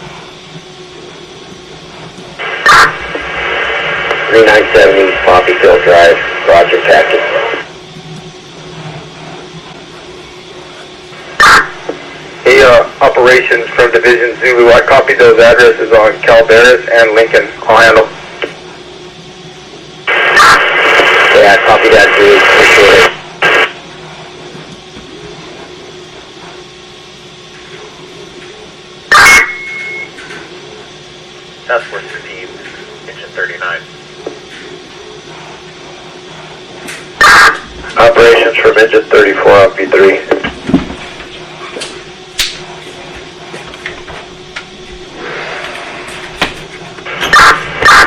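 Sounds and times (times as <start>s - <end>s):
radio squelch noise: 0.0s - 19.3s, 20.0s - 26.7s, 27.5s - 30.9s, 31.6s - 48.0s
faint hiss with low hum: 0.0s - 29.1s, 30.0s - 47.9s
radio static burst: 2.4s - 7.8s, 11.2s - 18.6s, 20.1s - 23.8s, 29.1s - 29.6s, 31.6s - 33.9s, 37.2s - 40.6s, 47.0s - 48.0s
high beep: 29.1s - 30.1s.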